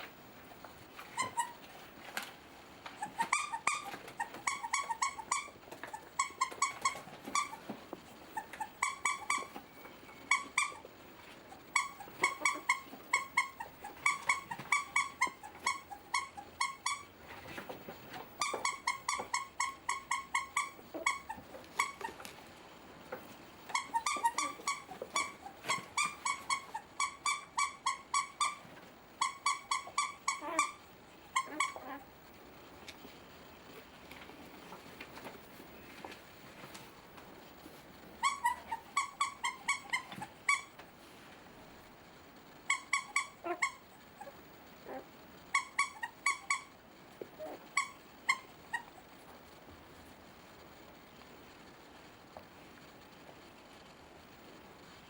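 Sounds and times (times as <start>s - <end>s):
squeaky toy squeaking: 1.2s - 1.6s, 3.0s - 7.6s, 8.4s - 10.9s, 11.7s - 17.1s, 18.4s - 22.1s, 23.7s - 32.0s, 38.2s - 40.8s, 42.7s - 46.7s, 47.4s - 49.0s.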